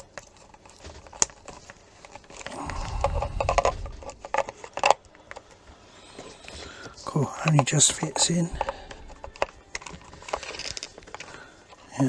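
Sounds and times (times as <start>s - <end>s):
plastic handling noise: 0.0s - 12.0s
low rubbing rumble: 2.6s - 4.4s.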